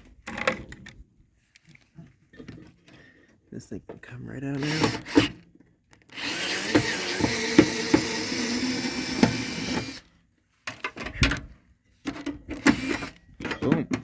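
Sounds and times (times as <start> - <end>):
power drill running: 4.5 - 5.4, 6.1 - 10.1, 12.6 - 13.3.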